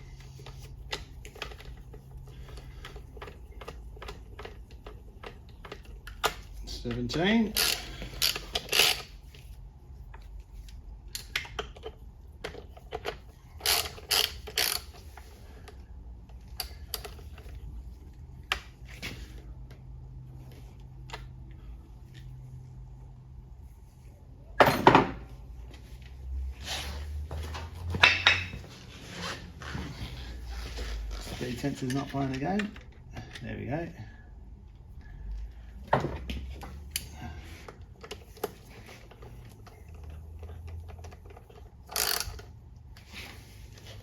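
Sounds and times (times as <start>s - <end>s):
hand tools clicking and knocking: 27.9s - 28.6s.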